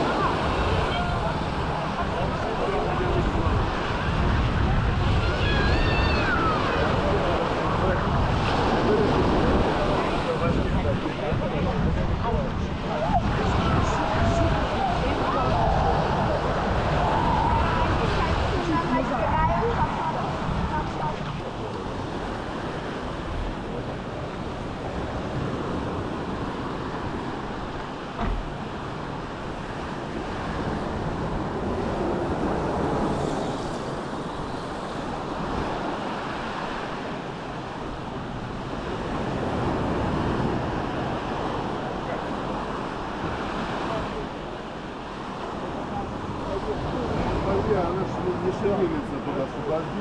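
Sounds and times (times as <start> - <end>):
sea surf washing onto beach: 0.0 - 50.0
brief thump: 28.2 - 28.5.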